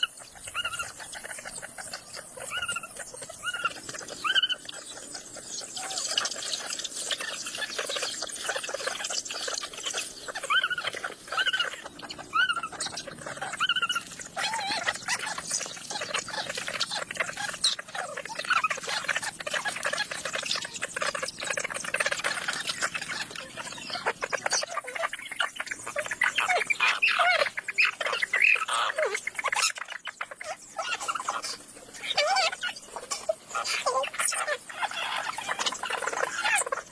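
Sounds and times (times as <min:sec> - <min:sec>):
chickens clucking and squawking: 0:00.0 - 0:36.9.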